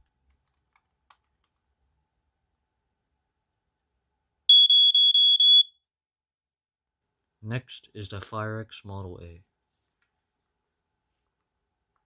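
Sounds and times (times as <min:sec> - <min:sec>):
smoke alarm high-pitched tone: 0:04.5 - 0:05.8.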